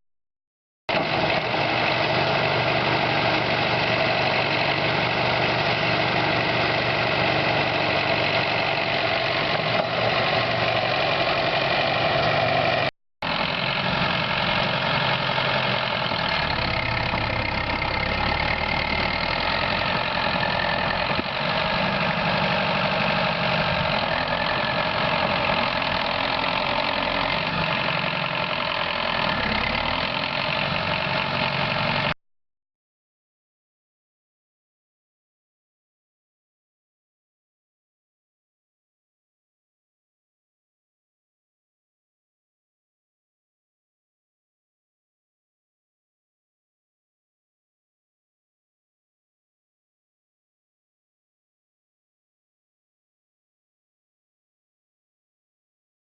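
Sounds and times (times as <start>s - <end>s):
tractor diesel engine running: 0.9s - 32.2s.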